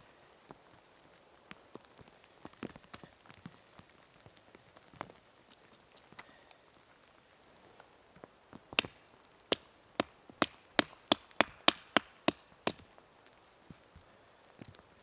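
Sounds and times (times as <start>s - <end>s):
wood chopping strikes: 8.8s - 12.8s.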